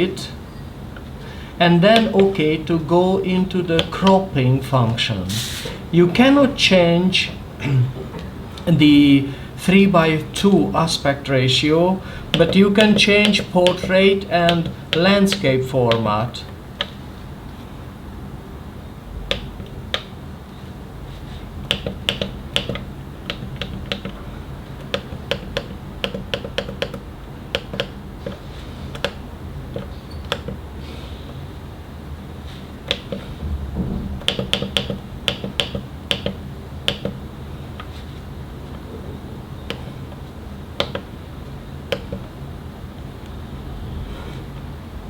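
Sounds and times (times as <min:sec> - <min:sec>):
low steady hum: 0:00.0 - 0:45.0
printer button clicks: 0:34.2 - 0:37.2, 0:41.9 - 0:42.3.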